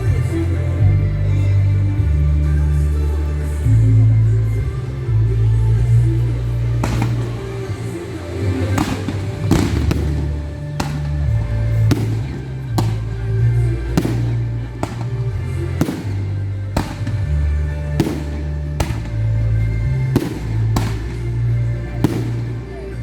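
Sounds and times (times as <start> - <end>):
loud music with deep bass: 0.0 - 23.0
firework bangs: 6.6 - 23.0.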